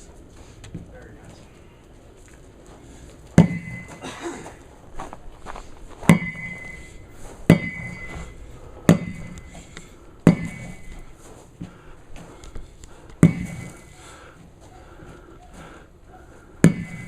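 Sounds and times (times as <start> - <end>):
tires bouncing knocks: 3.2 - 12.3, 13.2 - 14.0
sledgehammer thudding on tires: 3.3 - 4.6, 6.0 - 12.3, 13.2 - 14.0, 16.6 - 17.0.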